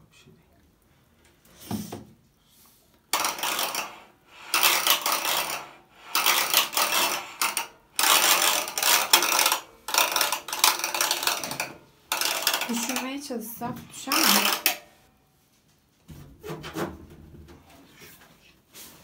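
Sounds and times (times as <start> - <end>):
metal washing machine parts rattling: 3.2 - 15.0.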